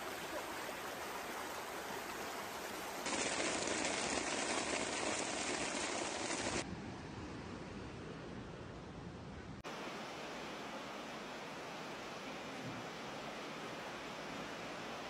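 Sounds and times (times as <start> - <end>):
floodwater rushing: 0.0 - 6.6
heavy rain: 0.0 - 6.6.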